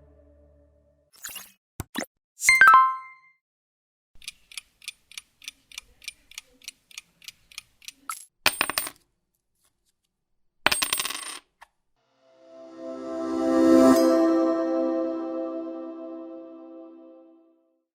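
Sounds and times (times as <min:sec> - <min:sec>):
musical tone: 0:12.3 - 0:17.4.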